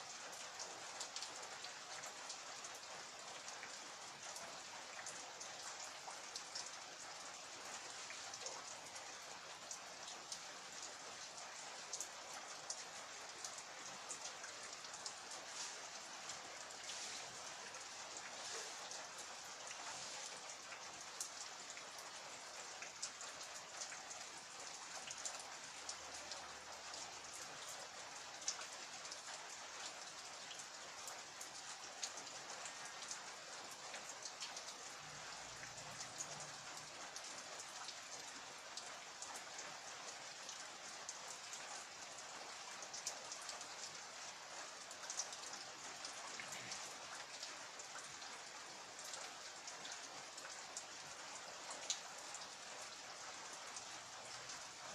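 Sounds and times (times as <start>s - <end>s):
steady rain: 0.0s - 54.9s.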